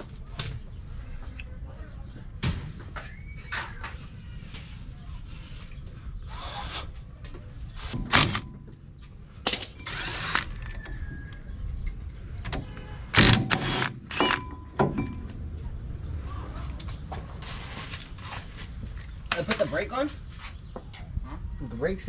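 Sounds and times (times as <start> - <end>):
power tool driving bolts: 6.3 - 6.9, 7.8 - 8.6, 9.5 - 10.8, 13.1 - 14.5.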